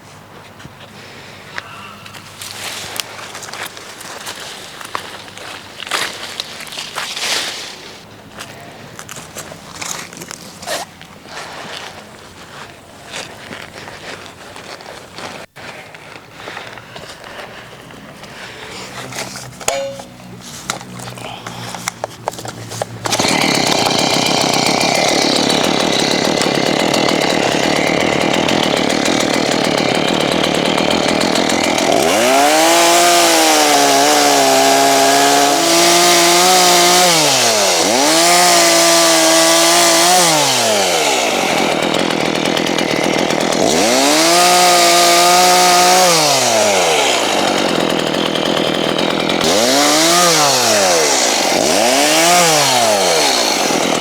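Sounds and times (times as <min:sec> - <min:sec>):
chainsaw revving: 0:16.6 - 0:54.0.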